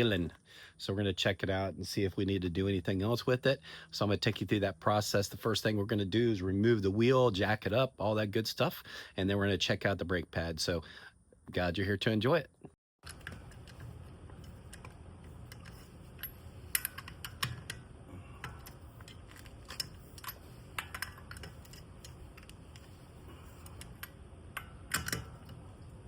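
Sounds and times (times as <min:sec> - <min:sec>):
steady low hum: 0:00.0 - 0:26.0
equipment clicks and clinks: 0:13.0 - 0:25.9.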